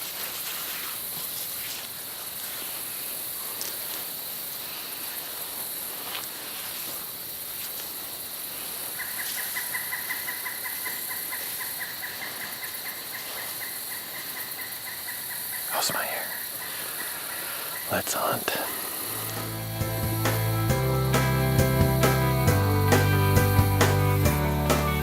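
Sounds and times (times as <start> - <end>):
insect chorus: 0.0 - 23.6.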